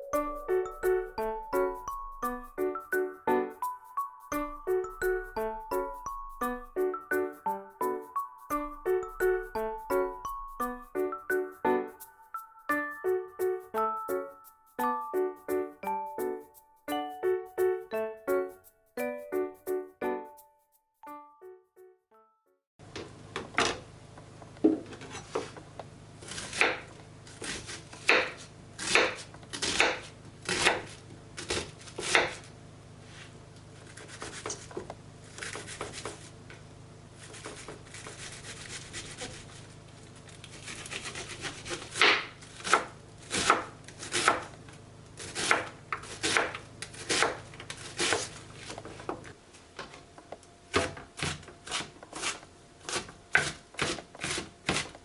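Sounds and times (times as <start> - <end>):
knife chopping on cutting board: 26.4 - 32.4, 41.0 - 44.5, 45.2 - 47.4, 50.7 - 54.9
knife scraping cutting board: 33.8 - 34.7, 35.4 - 36.3, 37.2 - 39.6, 45.2 - 48.3, 51.2 - 55.0.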